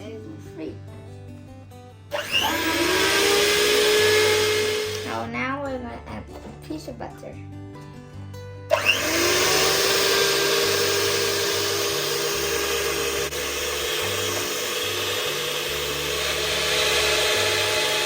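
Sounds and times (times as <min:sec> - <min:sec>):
electric mixer motor whine: 0:02.1 - 0:05.3, 0:08.7 - 0:18.0.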